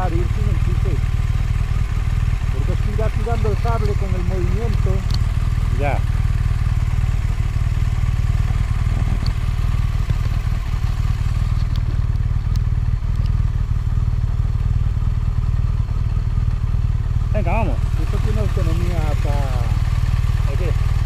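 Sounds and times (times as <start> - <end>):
motorcycle engine running: 0.0 - 21.0
faint ticks: 11.5 - 13.4.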